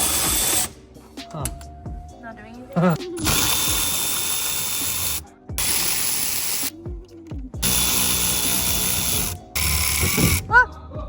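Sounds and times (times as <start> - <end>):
cordless power tool whining: 3.2 - 6.7, 7.6 - 10.5.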